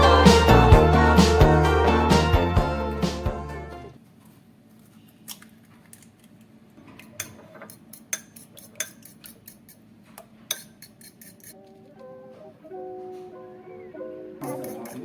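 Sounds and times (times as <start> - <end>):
cutlery and dishes clinking: 7.0 - 9.8, 10.5 - 11.6, 14.4 - 15.0.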